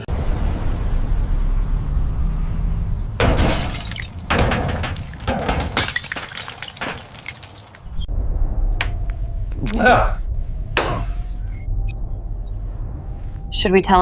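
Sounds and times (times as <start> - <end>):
crashing impacts: 3.2 - 8.1
glass shattering: 3.2 - 8.1
low rumble: 6.7 - 14.0.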